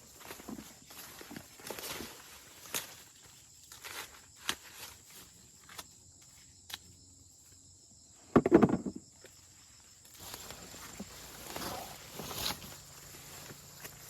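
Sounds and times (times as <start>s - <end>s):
dry plant material crackling: 0.0s - 5.9s.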